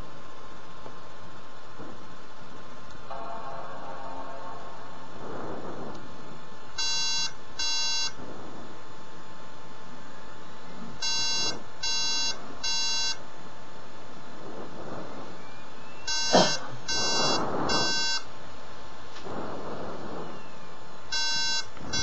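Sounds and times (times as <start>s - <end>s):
short startup beeps: 15.5s - 18.2s.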